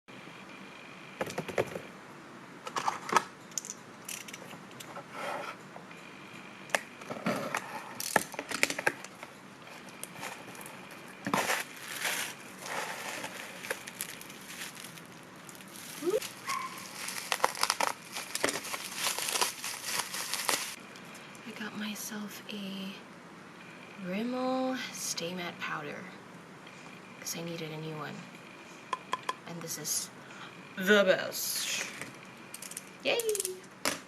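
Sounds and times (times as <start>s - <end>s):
clicks and knocks of items: 6.7s - 9.3s
packaging crinkling: 10.0s - 20.8s.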